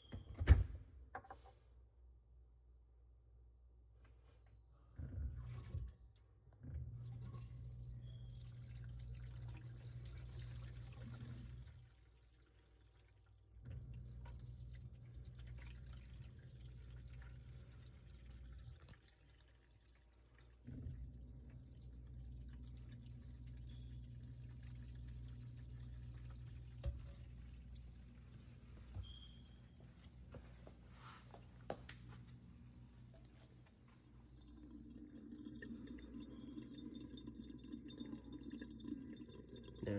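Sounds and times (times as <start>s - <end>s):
dishwasher drain pump humming: 6.5s - 30.8s
water running through pump: 7.0s - 39.9s.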